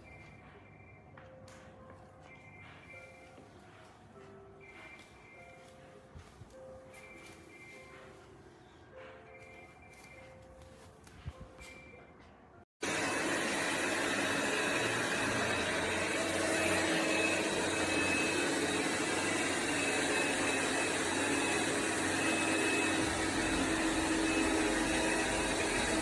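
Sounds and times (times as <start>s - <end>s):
robot vacuum motor whirring: 12.8s - 26.0s.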